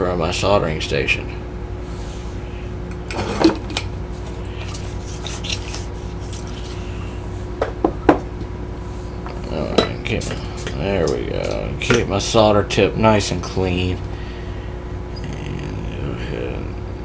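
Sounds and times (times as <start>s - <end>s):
steady hum: 0.0s - 17.0s.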